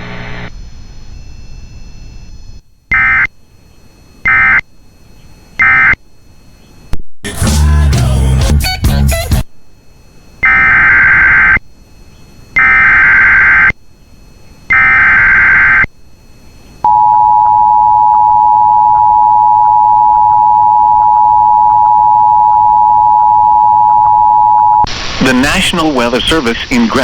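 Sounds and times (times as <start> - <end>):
loud electronic attention tone: 0.0 - 3.4, 4.2 - 4.6, 5.6 - 6.0, 10.4 - 11.6, 14.7 - 15.9
buzzing data tones: 0.0 - 7.0, 10.4 - 27.0
noisy burst of sound: 24.8 - 27.0.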